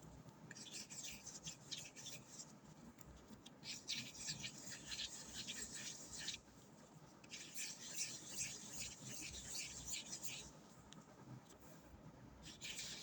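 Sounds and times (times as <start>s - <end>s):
scratchy rubbing strokes: 3.6s - 6.4s, 7.3s - 10.6s, 12.4s - 13.0s.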